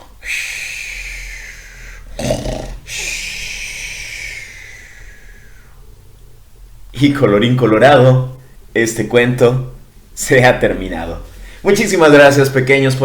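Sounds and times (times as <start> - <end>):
person imitating snoring: 0.2 - 5.7.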